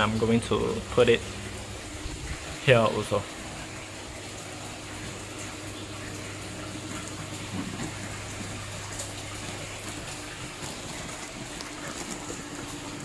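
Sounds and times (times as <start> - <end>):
low filter hum: 0.0 - 13.0
water splashing and trickling: 0.0 - 13.0.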